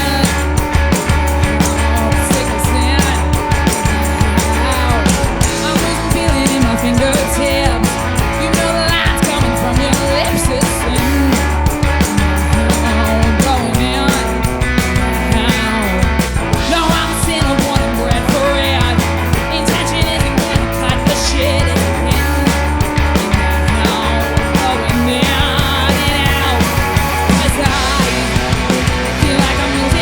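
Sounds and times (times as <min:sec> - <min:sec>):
drums hitting: 0:00.0 - 0:30.0
rock band playing: 0:00.0 - 0:30.0.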